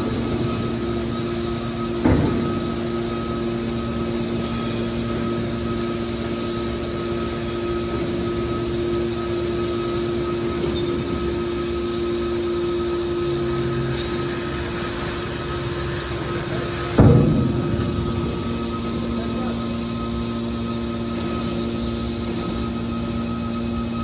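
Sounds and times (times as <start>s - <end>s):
hydraulic baler humming: 0.0s - 24.0s
sharp knock: 17.0s - 20.3s.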